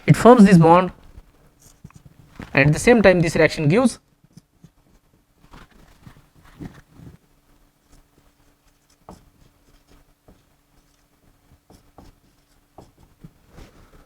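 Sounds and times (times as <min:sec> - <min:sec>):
low electrical hum: 0:00.0 - 0:14.0
pen scratching while writing: 0:07.8 - 0:13.8.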